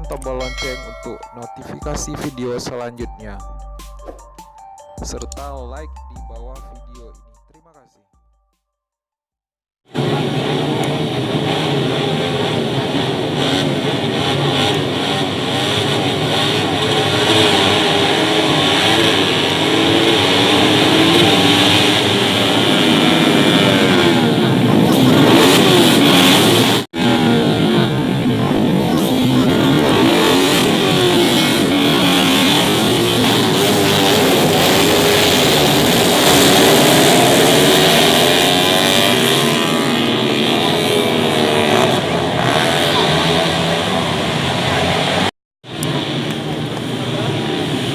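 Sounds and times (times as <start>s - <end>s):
motorcycle engines revving hard: 9.9s - 47.9s.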